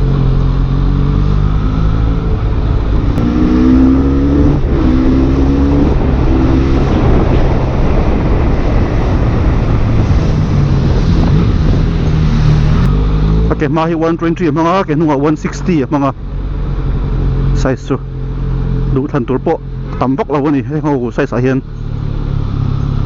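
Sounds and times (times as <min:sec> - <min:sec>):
motorcycle engine accelerating: 0:00.0 - 0:14.0.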